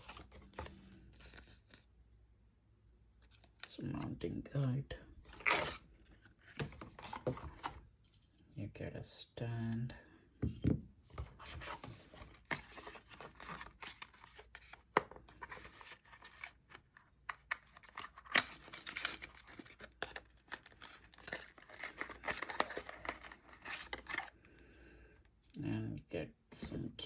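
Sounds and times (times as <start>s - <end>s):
packaging rustling and scraping: 11.2s - 24.5s.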